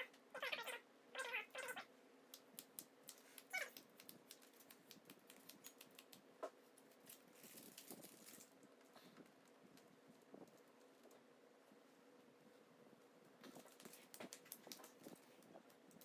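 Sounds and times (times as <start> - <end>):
faint clicks and ticks: 2.3 - 7.2.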